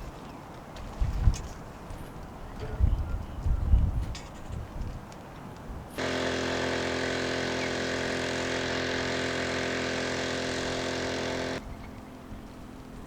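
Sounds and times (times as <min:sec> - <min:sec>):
boat engine running: 0:06.0 - 0:12.9.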